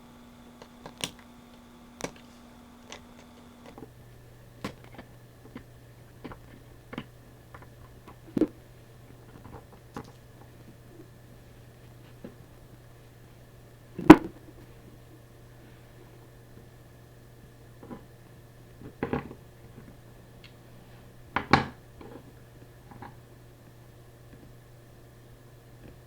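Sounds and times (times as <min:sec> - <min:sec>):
faint electrical hum: 0:00.0 - 0:26.0
hand tools clicking and tapping: 0:00.5 - 0:03.9.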